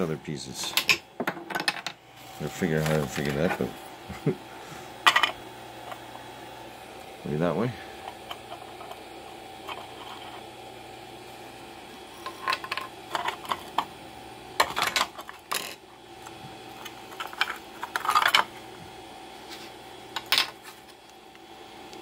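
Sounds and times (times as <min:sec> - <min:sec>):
faint steady hum: 0:00.0 - 0:22.0
plastic parts clattering and clicking: 0:17.2 - 0:18.5.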